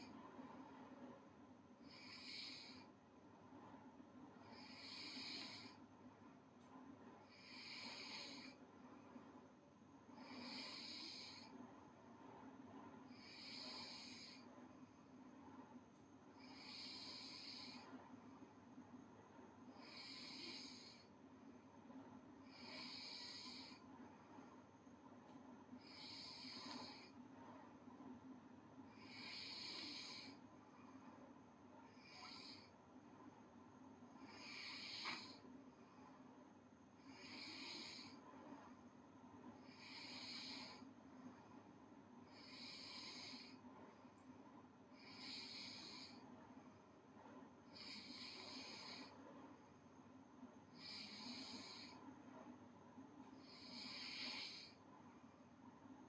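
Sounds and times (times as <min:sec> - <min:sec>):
girl snoring faintly: 0:29.0 - 0:30.4, 0:31.9 - 0:32.8, 0:34.2 - 0:35.4.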